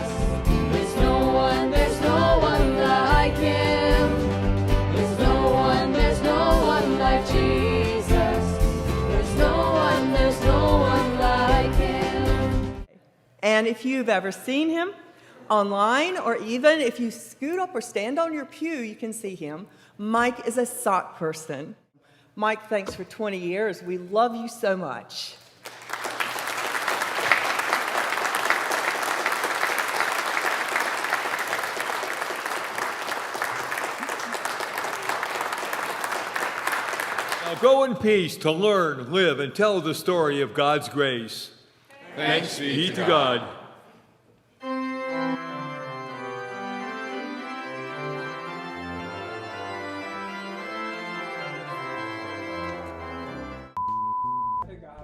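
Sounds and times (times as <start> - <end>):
crowd applauding: 25.6 - 38.0
church organ chords: 44.6 - 53.8.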